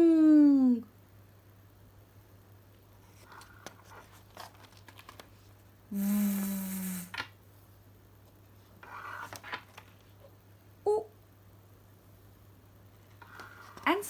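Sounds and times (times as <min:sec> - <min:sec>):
paper pages rustling: 0:03.0 - 0:05.6, 0:08.6 - 0:10.2, 0:13.2 - 0:14.0
woman making buzzing sound: 0:05.9 - 0:07.2.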